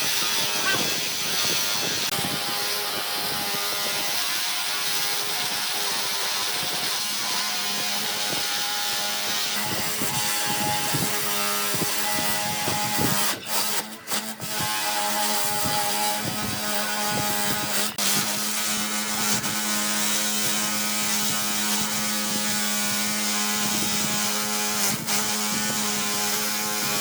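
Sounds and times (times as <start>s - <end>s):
power tool motor whining: 0.0s - 27.0s.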